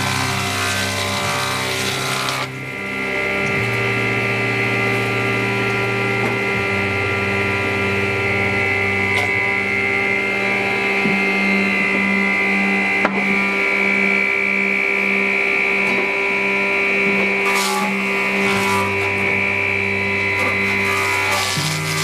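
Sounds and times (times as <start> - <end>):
electric motor humming: 0.0 - 22.0.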